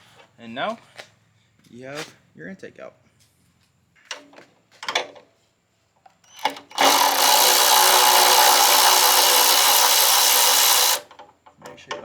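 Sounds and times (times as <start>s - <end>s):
power drill motor running: 6.4s - 11.1s.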